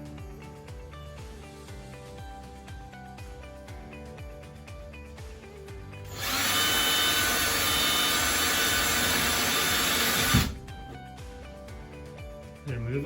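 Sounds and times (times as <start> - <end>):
power drill running: 6.1 - 10.6.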